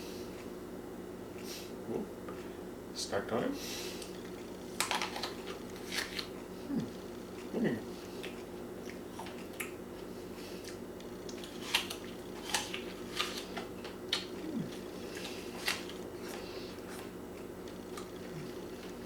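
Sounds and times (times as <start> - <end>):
low hum: 3.6 - 19.0
apple crunching: 4.8 - 6.8, 10.6 - 19.0.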